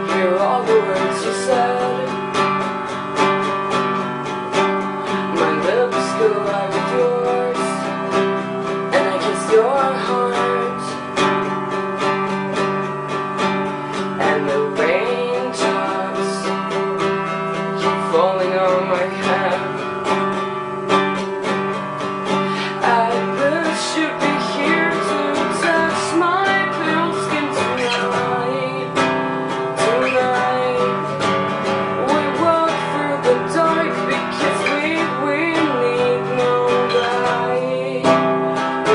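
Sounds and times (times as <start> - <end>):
acoustic guitar strumming: 0.0 - 38.9.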